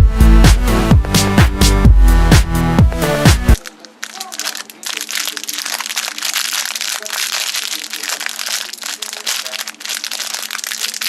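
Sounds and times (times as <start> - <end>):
foil wrapper crinkling: 3.6 - 11.0.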